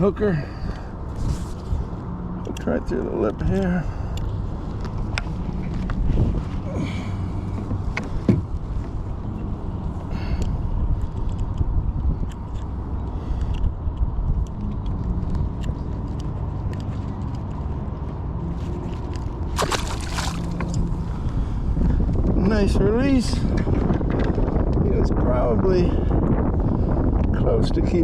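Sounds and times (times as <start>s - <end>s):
water sloshing against boat: 18.5s - 21.2s
fish splashing into water: 19.5s - 20.8s.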